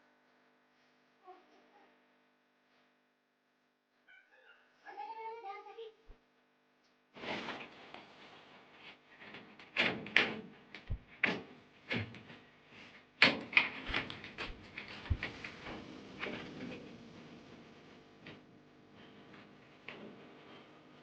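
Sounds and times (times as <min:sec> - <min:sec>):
deep thuds: 0:13.9 - 0:16.6.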